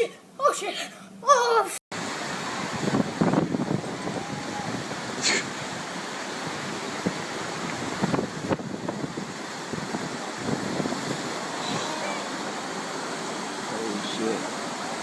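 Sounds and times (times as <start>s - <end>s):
surf: 1.6s - 15.0s
wind roaring: 1.9s - 15.0s
wind buffeting microphone: 2.0s - 13.7s.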